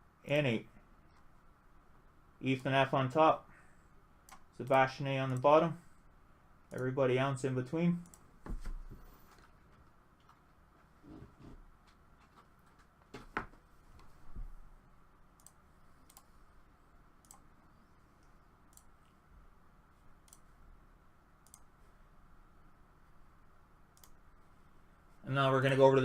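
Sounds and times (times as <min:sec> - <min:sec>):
computer mouse clicks: 0:08.0 - 0:08.3, 0:15.4 - 0:16.4, 0:17.2 - 0:17.5, 0:18.2 - 0:18.9, 0:20.2 - 0:20.5, 0:21.4 - 0:21.7, 0:24.0 - 0:24.2.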